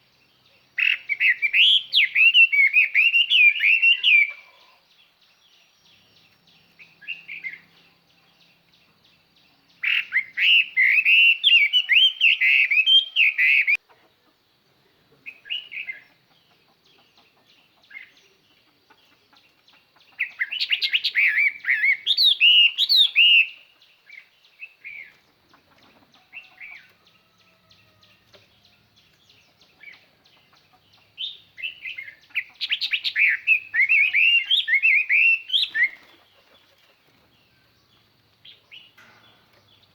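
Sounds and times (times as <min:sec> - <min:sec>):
bird singing whistled phrases: 0:00.8 - 0:04.4, 0:09.8 - 0:13.8, 0:20.4 - 0:23.6, 0:31.2 - 0:36.0.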